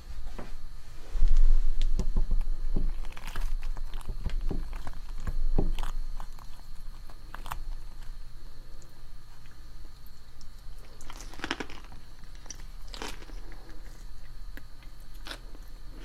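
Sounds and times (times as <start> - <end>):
bites and chewing: 2.4 - 8.2, 8.8 - 16.0
wet clicks and crackles: 8.8 - 15.8.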